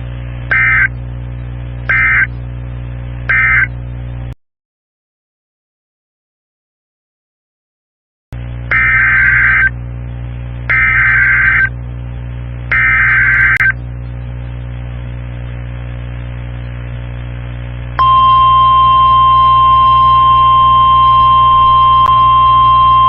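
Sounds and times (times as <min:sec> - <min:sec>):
steady low hum: 0:00.0 - 0:04.4, 0:08.4 - 0:23.0
digital data bursts: 0:00.5 - 0:00.9, 0:01.9 - 0:02.3, 0:03.3 - 0:03.7, 0:10.7 - 0:11.7, 0:12.7 - 0:13.7
warning alarm tone: 0:08.7 - 0:09.7, 0:10.7 - 0:11.7, 0:12.7 - 0:13.6, 0:18.0 - 0:23.0.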